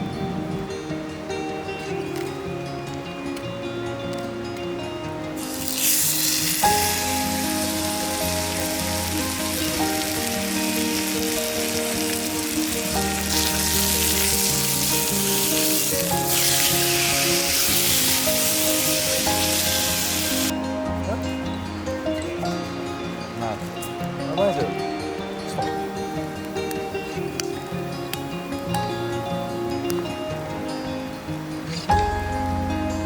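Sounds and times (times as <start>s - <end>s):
background music: 0.0s - 33.0s
food sizzling in a pan: 5.4s - 22.9s.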